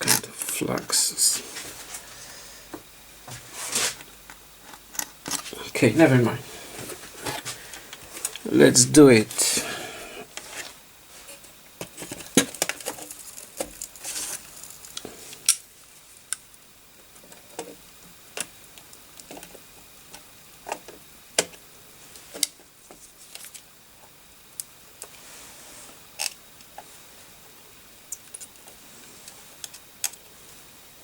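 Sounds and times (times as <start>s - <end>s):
solder sizzle: 0.4s - 17.0s.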